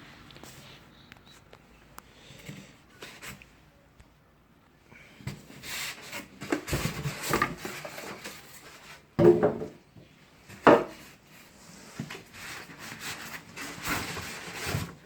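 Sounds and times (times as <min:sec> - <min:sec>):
packaging rustling and scraping: 0:05.4 - 0:09.0, 0:11.3 - 0:15.0.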